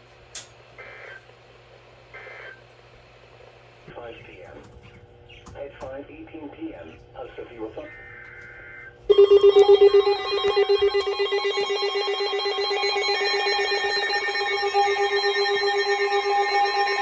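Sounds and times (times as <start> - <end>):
pulsing multi-tone alarm: 8.0 - 17.0.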